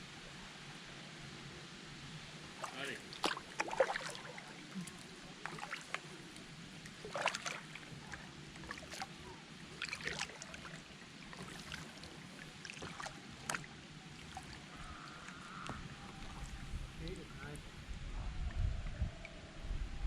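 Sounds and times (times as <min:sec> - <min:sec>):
paddle splashing water: 0:02.4 - 0:17.4.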